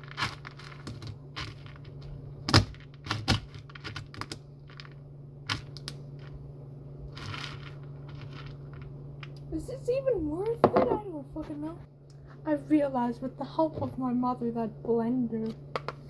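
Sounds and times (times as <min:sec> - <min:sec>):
cat food crushed in bowl: 0:00.0 - 0:06.4, 0:07.0 - 0:09.5
steady low hum: 0:00.0 - 0:16.0.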